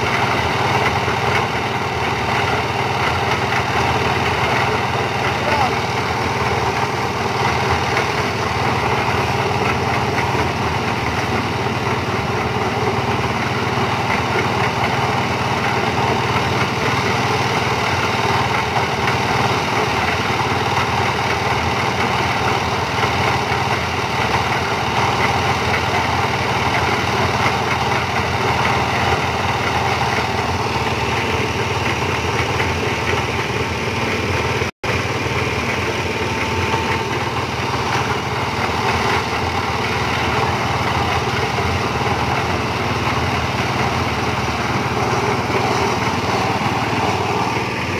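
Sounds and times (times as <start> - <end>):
concrete mixer engine running: 0.0 - 47.9.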